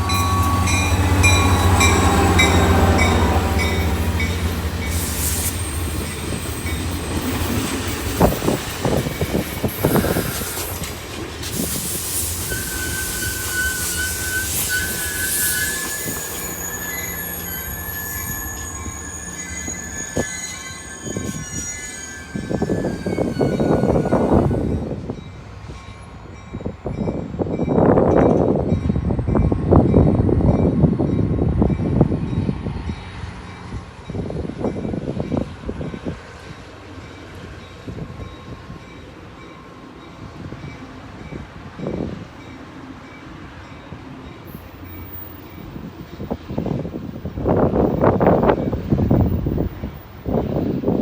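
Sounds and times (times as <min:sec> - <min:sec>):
train wheels squealing: 0:00.0 - 0:27.2, 0:43.6 - 0:51.0.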